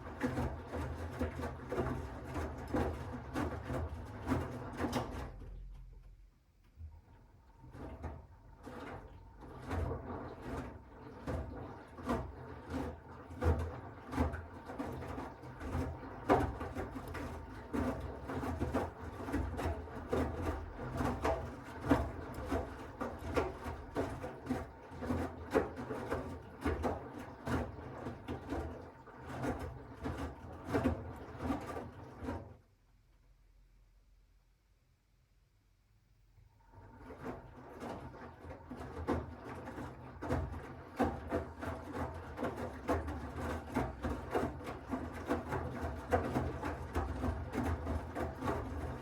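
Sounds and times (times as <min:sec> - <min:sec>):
washing machine motor hum: 0:07.0 - 0:32.5, 0:36.6 - 0:49.0.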